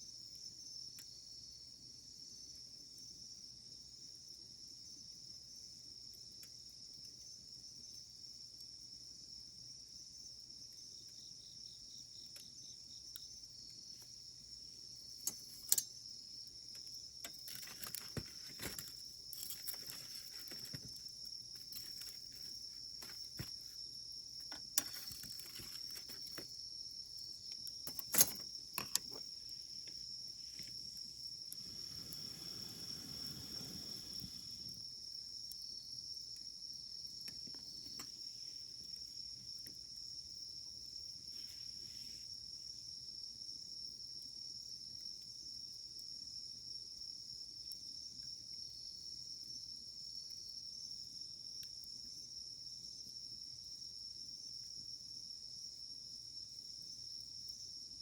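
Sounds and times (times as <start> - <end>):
high insect chorus: 0.0 - 58.0
campfire crackling and snapping: 16.7 - 23.7, 27.2 - 34.8
soft rush of noise: 31.6 - 34.7.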